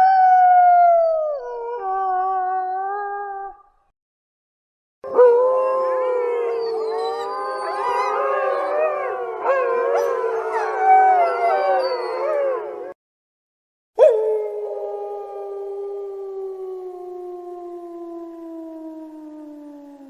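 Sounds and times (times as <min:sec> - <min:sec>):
coyotes howling and yipping: 0:05.1 - 0:13.0
single howl: 0:05.1 - 0:13.0, 0:14.0 - 0:20.0.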